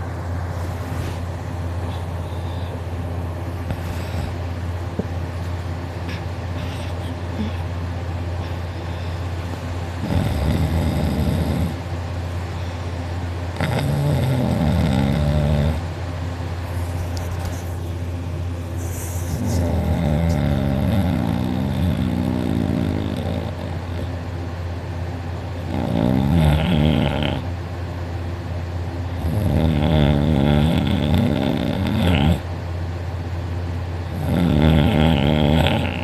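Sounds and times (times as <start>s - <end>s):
steady low hum: 0.0s - 36.0s
man snoring loudly: 10.0s - 11.8s, 13.6s - 15.9s, 19.3s - 23.8s, 25.7s - 27.5s, 29.2s - 32.5s, 34.1s - 36.0s.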